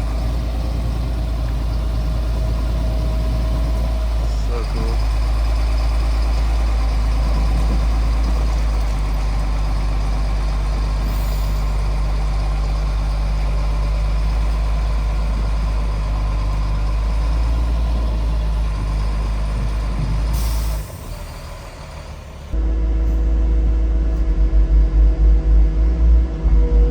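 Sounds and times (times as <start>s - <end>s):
vehicle engine under load: 0.0s - 26.9s.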